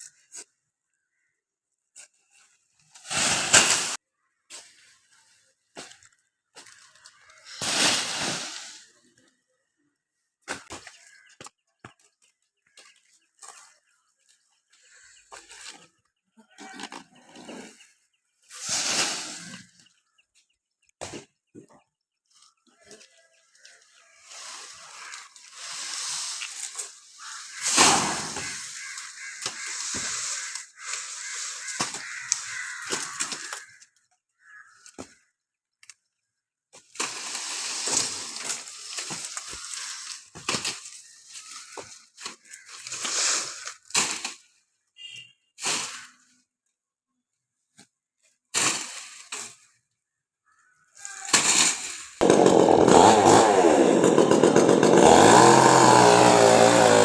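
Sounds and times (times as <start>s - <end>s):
chainsaw running: 52.2s - 57.0s.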